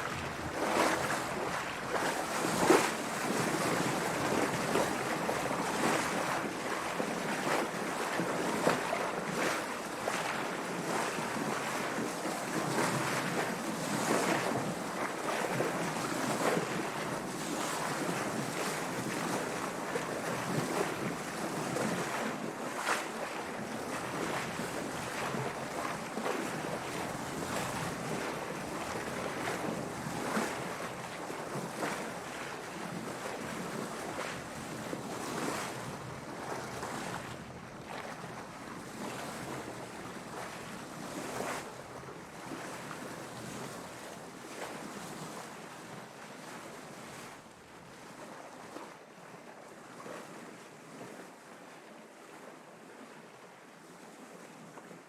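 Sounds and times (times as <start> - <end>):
water splashing against hull: 0.0 - 49.1
wind: 0.0 - 55.0.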